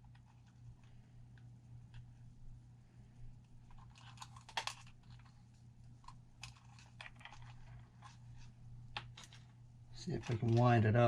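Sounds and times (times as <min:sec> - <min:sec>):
steady low hum: 0:00.0 - 0:11.0
hands handling wires: 0:03.4 - 0:10.8.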